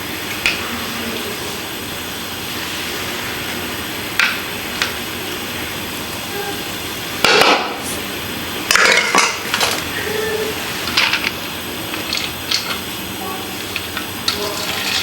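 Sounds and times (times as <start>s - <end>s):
steady background hiss: 0.0s - 15.0s
metal spoon scraping pot: 14.3s - 15.0s.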